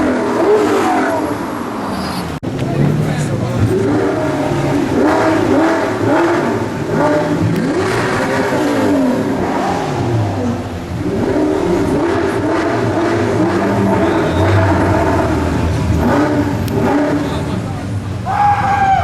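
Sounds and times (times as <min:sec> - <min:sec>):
car engine revving: 0:00.0 - 0:18.9.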